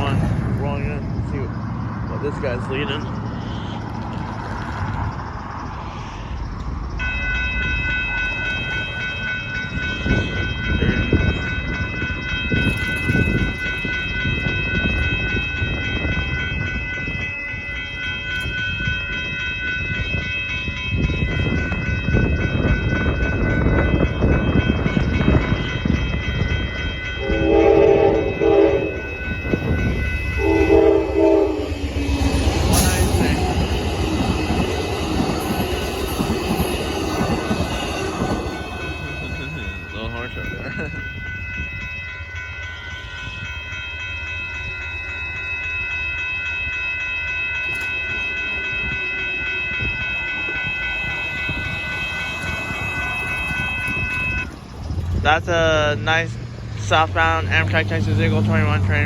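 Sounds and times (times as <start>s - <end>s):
steady high ringing tone: 0.0s - 59.0s
train rumbling and clattering: 0.0s - 59.0s
locomotive horn blasts: 27.2s - 33.7s, 47.5s - 54.6s.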